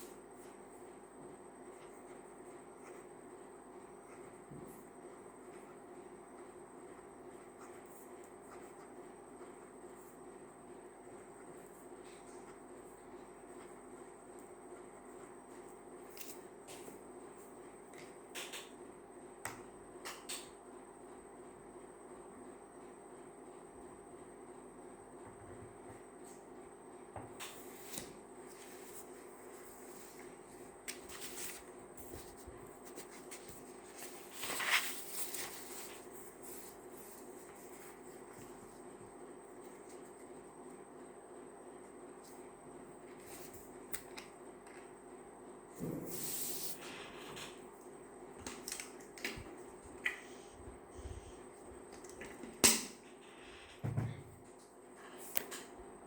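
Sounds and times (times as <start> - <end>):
electric fan hum: 0.0 - 56.0
pen scratching on paper: 1.7 - 3.1, 4.0 - 5.9, 6.9 - 10.2
paper rustling: 27.6 - 38.8.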